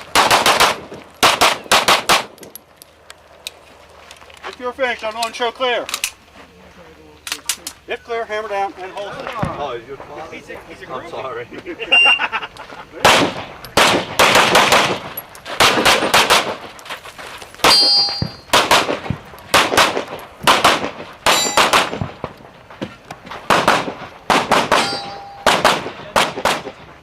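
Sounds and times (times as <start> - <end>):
steel targets ringing: 17.6 - 18.6, 21.2 - 22.0, 24.7 - 25.6
handgun shots: 23.5 - 26.8.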